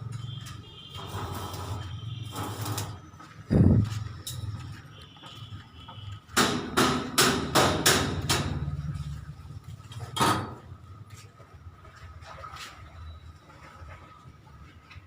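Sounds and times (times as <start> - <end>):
sharp knocks: 6.4 - 8.7.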